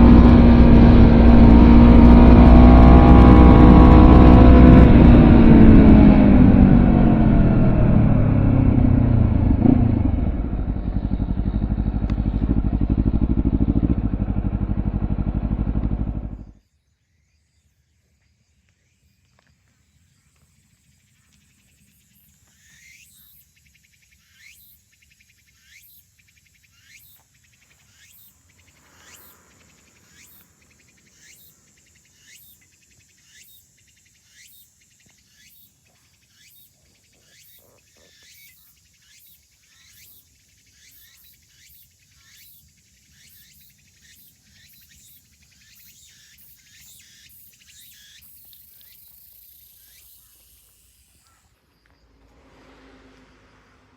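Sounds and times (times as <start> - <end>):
motorcycle engine idling: 0.0 - 16.6.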